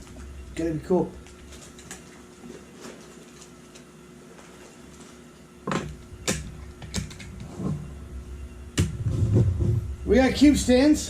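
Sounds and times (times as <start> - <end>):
faint room hum: 0.0 - 11.0.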